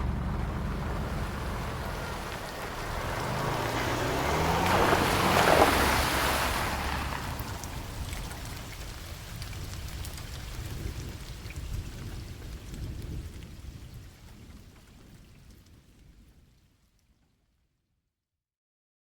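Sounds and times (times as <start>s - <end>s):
car engine revving: 0.0s - 8.7s
steady rain: 0.0s - 17.2s.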